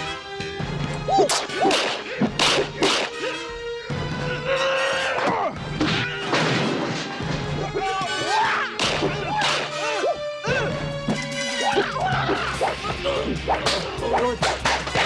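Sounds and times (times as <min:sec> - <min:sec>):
background music: 0:00.0 - 0:15.0
swooping vocal cries: 0:01.1 - 0:06.4, 0:07.6 - 0:15.0
fight thwacks and crashes: 0:01.3 - 0:03.3, 0:08.8 - 0:09.9.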